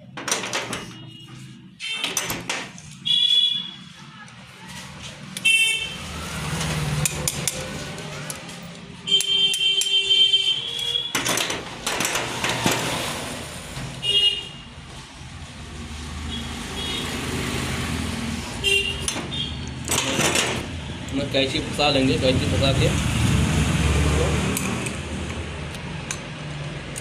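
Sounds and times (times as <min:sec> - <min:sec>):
vehicle horns honking: 0:00.8 - 0:02.1, 0:03.0 - 0:04.0, 0:05.4 - 0:06.2, 0:09.0 - 0:11.2, 0:14.0 - 0:14.7, 0:16.3 - 0:17.3, 0:18.6 - 0:19.7
vehicle rushing past: 0:05.9 - 0:08.6, 0:15.6 - 0:18.6, 0:21.4 - 0:25.6.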